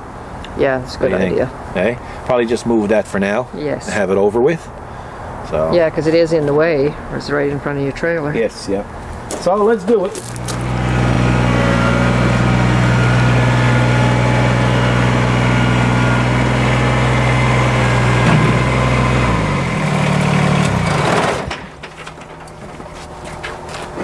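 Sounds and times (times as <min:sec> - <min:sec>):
tractor diesel engine idling: 0:10.4 - 0:21.5.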